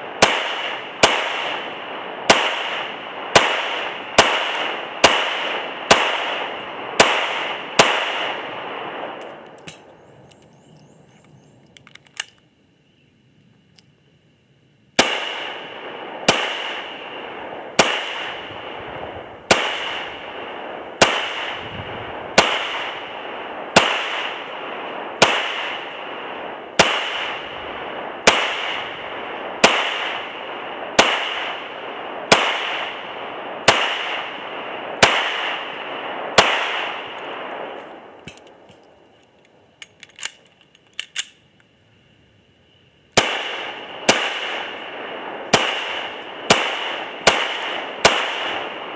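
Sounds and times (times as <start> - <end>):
pistol shots with echo: 0.0 - 9.9, 15.0 - 38.4, 43.2 - 48.9.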